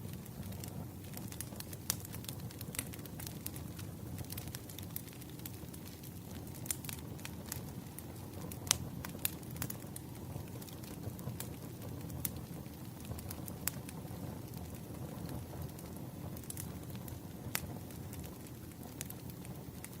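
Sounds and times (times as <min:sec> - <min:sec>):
logs crackling and popping: 0:00.0 - 0:20.0
low rumble of flames: 0:00.0 - 0:20.0.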